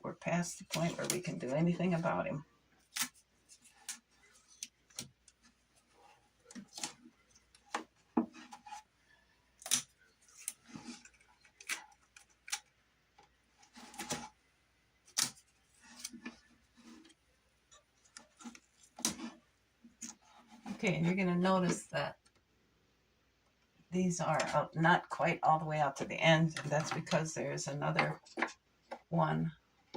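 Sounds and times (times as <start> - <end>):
tape rustling: 9.6 - 14.4.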